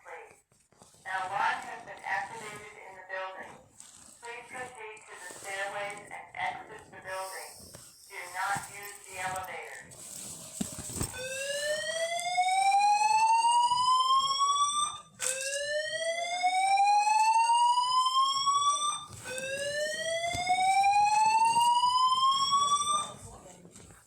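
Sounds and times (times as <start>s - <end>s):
fire alarm whoop tone: 11.2s - 23.3s.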